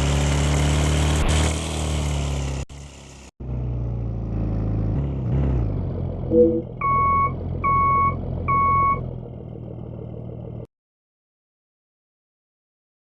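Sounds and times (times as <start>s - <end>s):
bus engine idling: 6.2s - 10.7s
reversing alarm beeps: 6.3s - 9.0s.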